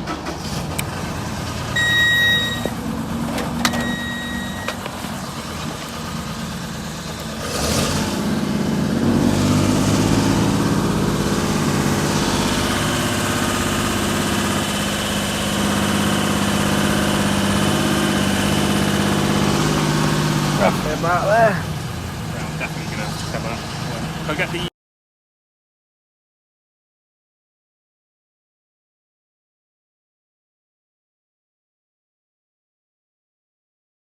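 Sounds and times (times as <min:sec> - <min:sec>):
engine running: 0:00.0 - 0:24.7
short electronic beep: 0:01.8 - 0:02.8, 0:03.7 - 0:04.8.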